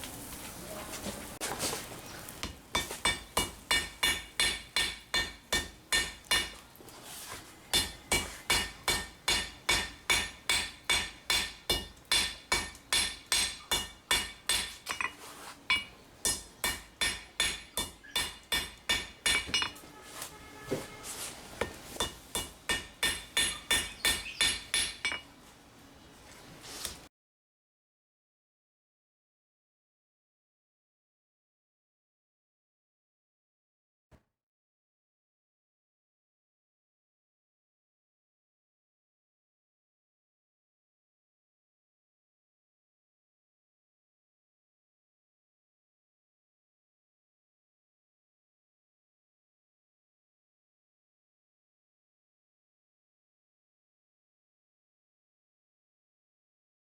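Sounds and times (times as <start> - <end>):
hammer striking steel on anvil: 2.8 - 6.6, 7.7 - 20.0, 21.6 - 25.3.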